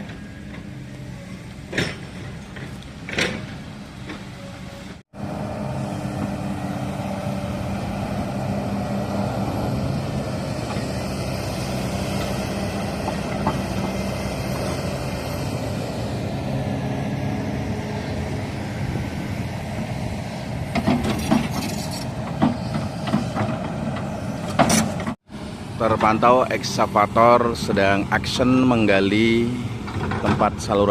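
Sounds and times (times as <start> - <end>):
excavator diesel engine running: 0.0 - 30.9.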